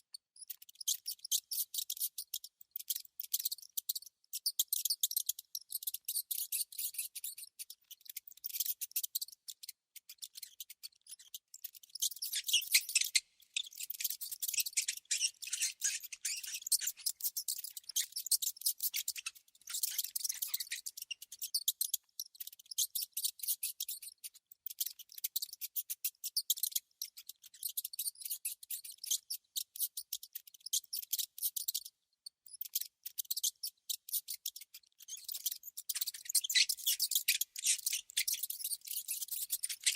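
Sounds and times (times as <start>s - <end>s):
rodents chittering and clicking: 0.1s - 39.9s.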